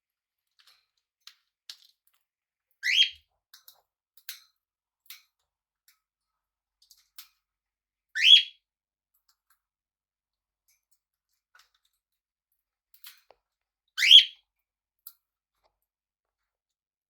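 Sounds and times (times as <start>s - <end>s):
parrot calling: 2.8s - 3.1s, 8.2s - 8.5s, 14.0s - 14.4s.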